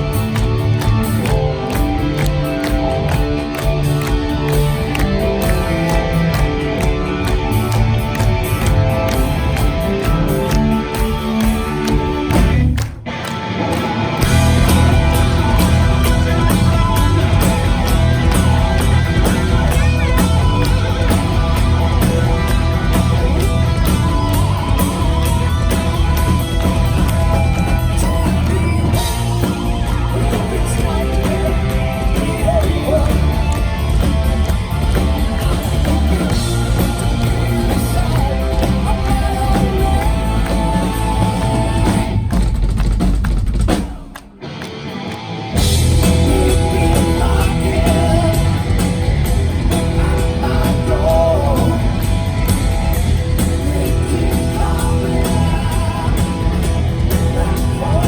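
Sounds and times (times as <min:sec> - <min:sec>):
live rock band playing: 0:00.0 - 0:58.0
person singing: 0:14.3 - 0:34.2, 0:34.8 - 0:42.3, 0:46.0 - 0:52.5, 0:53.4 - 0:58.0.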